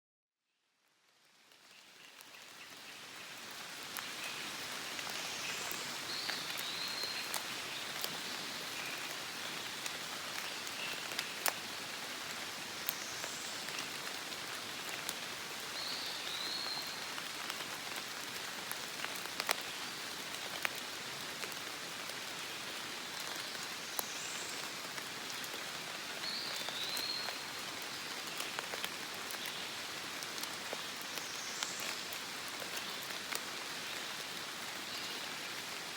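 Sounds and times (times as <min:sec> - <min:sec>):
rain on foliage: 0:00.9 - 0:35.9.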